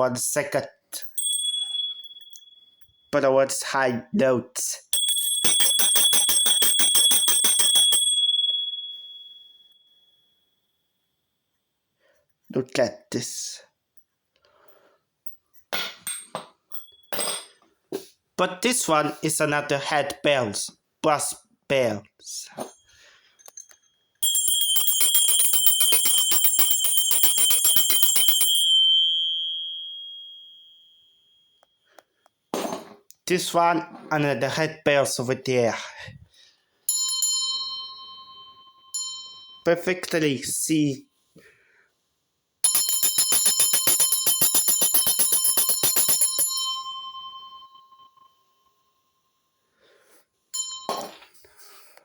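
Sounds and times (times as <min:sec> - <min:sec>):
hand bell ringing: 0:01.1 - 0:03.0, 0:04.9 - 0:10.0, 0:23.6 - 0:31.3, 0:36.9 - 0:39.7, 0:42.6 - 0:48.7, 0:50.5 - 0:51.2.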